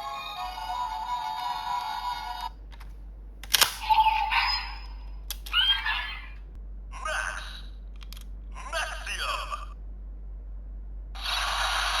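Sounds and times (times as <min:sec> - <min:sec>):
electronic toy jingle: 0:00.0 - 0:02.5
toy mechanical clicks: 0:03.4 - 0:04.7, 0:05.3 - 0:05.9, 0:08.0 - 0:08.2.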